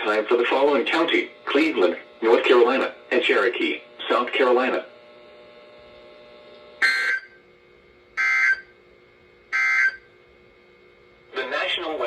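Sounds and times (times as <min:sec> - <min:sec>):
faint steady hum: 0:00.0 - 0:12.0
screechy digital chirps: 0:06.8 - 0:07.4, 0:08.2 - 0:08.7, 0:09.5 - 0:10.0.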